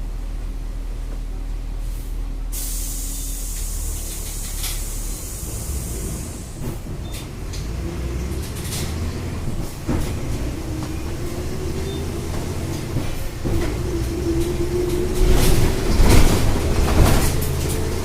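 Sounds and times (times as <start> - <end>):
diesel bus engine rumble: 0.0 - 18.0
high air hiss: 1.8 - 6.6.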